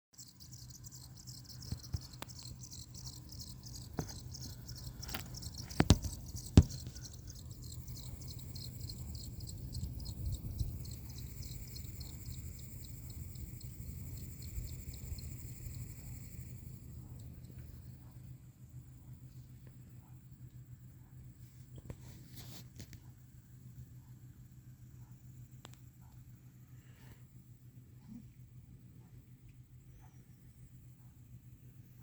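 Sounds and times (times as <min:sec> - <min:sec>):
sharp knocks: 0:03.9 - 0:07.2.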